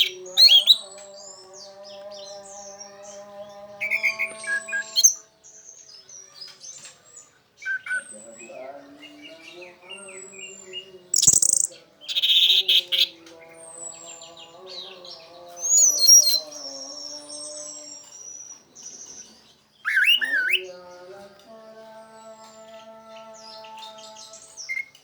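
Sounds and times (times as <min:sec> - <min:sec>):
thrush singing whistles: 0:00.0 - 0:00.9, 0:07.6 - 0:08.3, 0:11.1 - 0:13.2, 0:15.6 - 0:19.2, 0:19.8 - 0:20.7.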